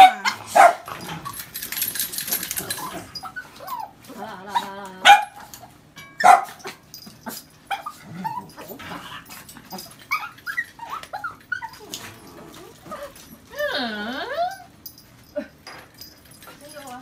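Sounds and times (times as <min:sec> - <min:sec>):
dog barking: 0:00.0 - 0:00.9, 0:05.0 - 0:05.4, 0:06.2 - 0:06.8
dog yipping and whining: 0:02.7 - 0:04.0, 0:06.2 - 0:09.1, 0:09.7 - 0:15.0.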